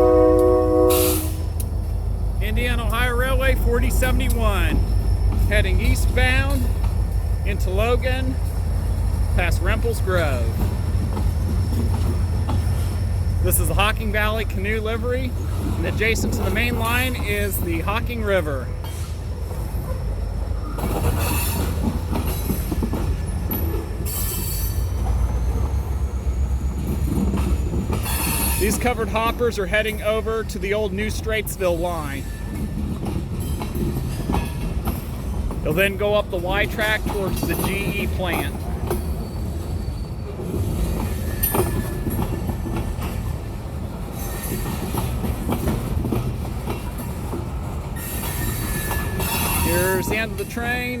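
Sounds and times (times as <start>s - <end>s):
freight train rumbling past: 0.0s - 51.0s
wheels clacking over rail joints: 0.2s - 51.0s
metallic wheel squeal: 23.6s - 26.7s, 27.6s - 28.9s, 39.0s - 42.2s, 48.0s - 50.8s.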